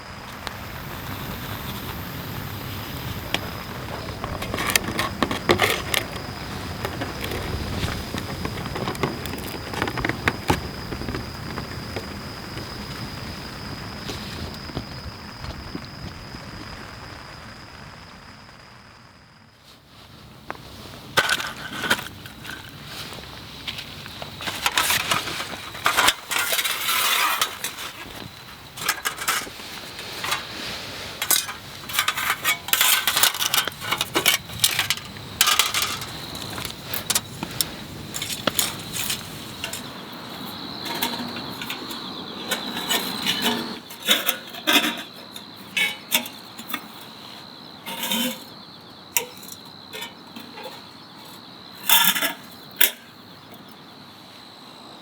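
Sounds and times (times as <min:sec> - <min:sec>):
knocks and rustling: 0:03.2 - 0:13.2, 0:21.2 - 0:48.6
metal parts clinking: 0:31.2 - 0:37.3, 0:40.8 - 0:47.0, 0:47.9 - 0:48.5, 0:49.2 - 0:53.0.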